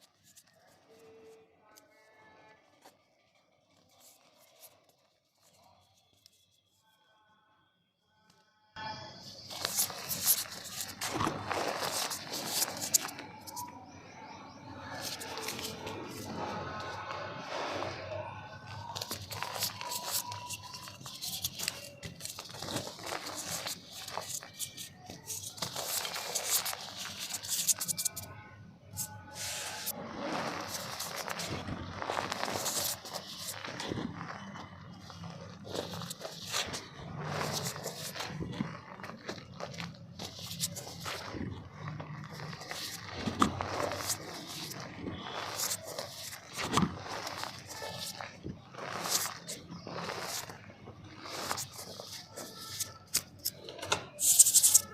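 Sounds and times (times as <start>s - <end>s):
mud crumbling in a clay pot: 9.4s - 28.3s, 29.1s - 54.9s.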